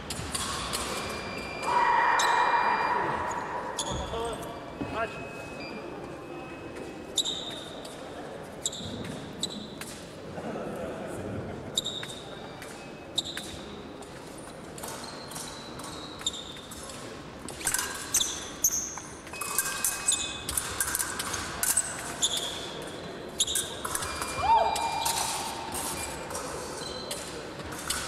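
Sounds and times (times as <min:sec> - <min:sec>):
shoes squeaking on floor: 0:00.9 - 0:06.2, 0:06.8 - 0:07.8, 0:08.6 - 0:09.8, 0:11.8 - 0:13.5, 0:15.0 - 0:16.7, 0:22.1 - 0:22.8, 0:25.8 - 0:27.4.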